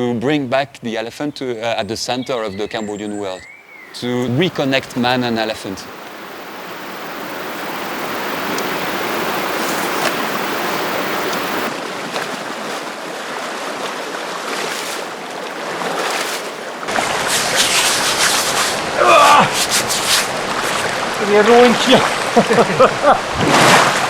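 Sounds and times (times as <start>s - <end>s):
flowing water rushing: 4.2s - 24.0s.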